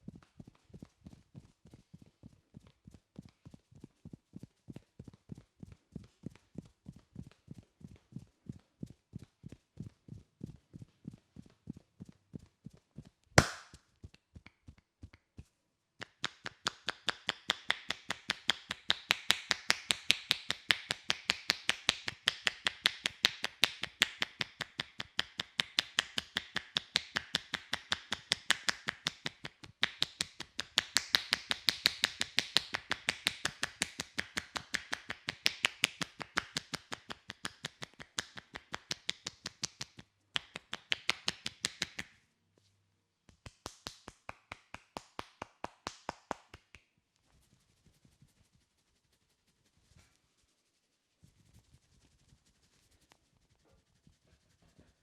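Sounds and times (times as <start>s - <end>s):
hands tapping on head: 13.4s - 42.1s, 43.3s - 46.9s.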